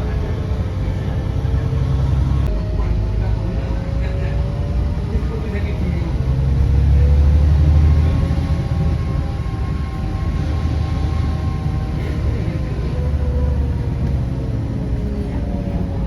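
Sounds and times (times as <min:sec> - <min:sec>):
road noise: 0:00.0 - 0:16.0
vehicle engine rumble: 0:00.0 - 0:16.0.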